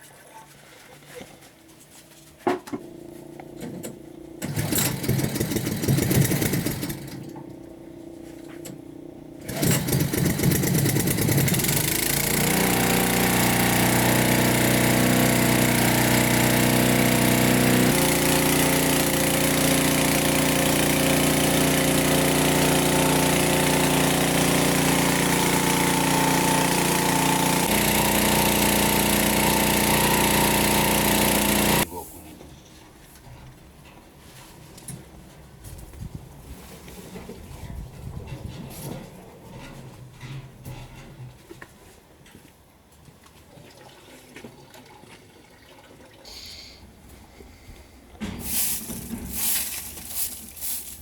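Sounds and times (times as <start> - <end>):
motor-driven machine running: 9.4 - 31.9.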